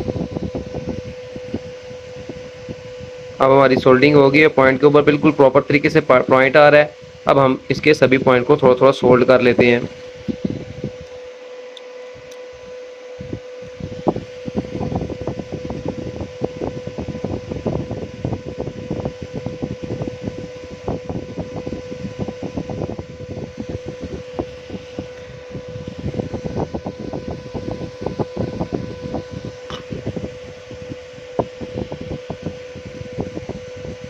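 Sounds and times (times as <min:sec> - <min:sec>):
small fan humming: 0:00.0 - 0:34.0
soldering iron crackling clicks: 0:11.0 - 0:12.5.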